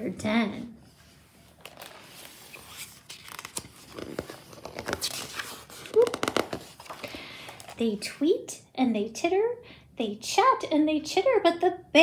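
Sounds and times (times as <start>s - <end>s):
paper rustling and crinkling: 1.4s - 7.8s.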